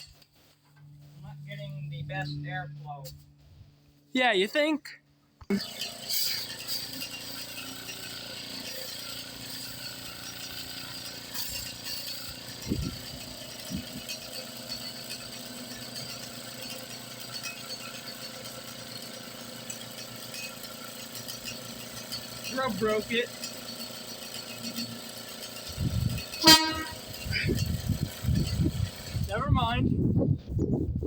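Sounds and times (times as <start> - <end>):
electric air compressor humming: 5.5 - 29.4.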